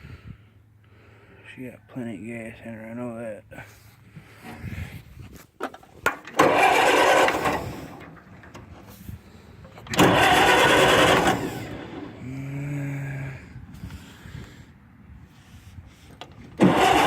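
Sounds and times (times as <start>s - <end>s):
tractor engine cranking: 5.6s - 12.4s, 16.0s - 17.0s.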